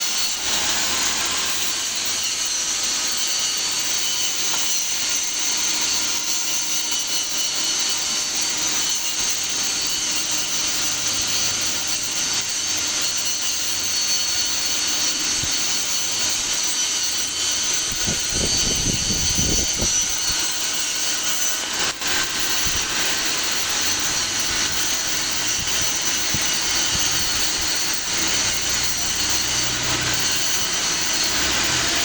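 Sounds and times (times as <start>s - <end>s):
welding arc hissing: 13.6s - 32.0s.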